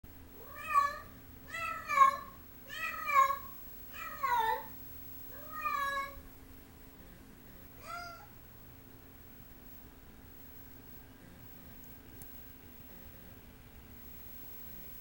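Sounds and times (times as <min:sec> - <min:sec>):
cat meowing: 0:00.4 - 0:04.7, 0:05.4 - 0:06.2, 0:07.8 - 0:08.3.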